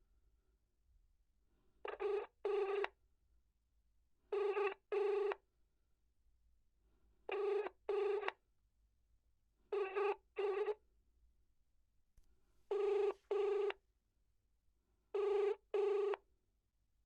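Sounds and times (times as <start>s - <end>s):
telephone ringback tone: 12.7s - 13.7s, 15.2s - 16.2s.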